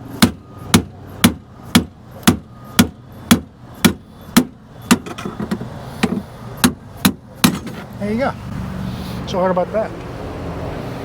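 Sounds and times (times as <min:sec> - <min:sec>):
hammer striking metal pry bar: 0:00.2 - 0:07.8.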